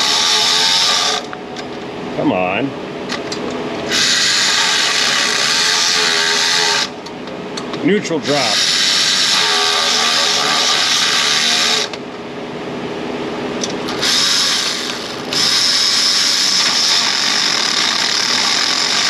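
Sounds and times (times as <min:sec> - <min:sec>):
handheld power tool running: 0:00.0 - 0:01.3, 0:03.9 - 0:07.0, 0:08.2 - 0:12.0, 0:13.9 - 0:19.0.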